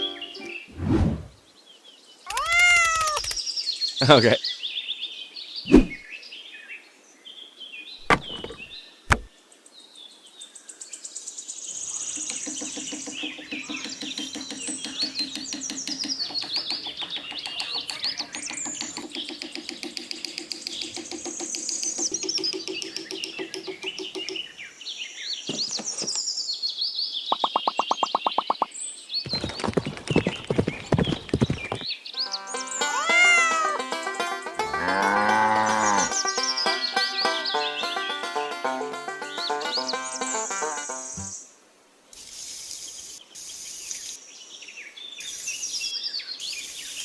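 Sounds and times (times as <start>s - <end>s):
sharp clicks or knocks: 2.3s - 3.4s, 12.2s - 24.5s, 32.2s - 41.3s
birds chirping and twittering: 12.0s - 24.6s.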